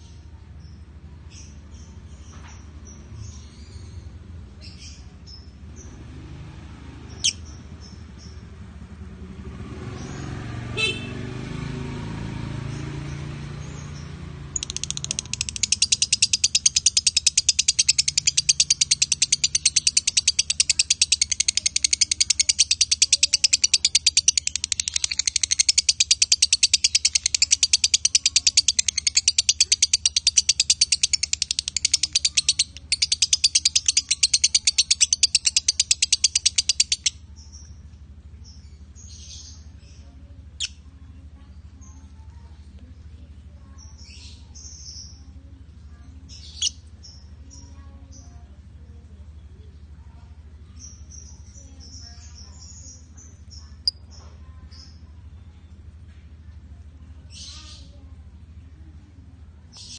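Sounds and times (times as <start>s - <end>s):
lovebird chattering rapidly: 7.1s - 8.4s, 13.8s - 37.7s, 46.3s - 48.3s, 50.8s - 55.0s.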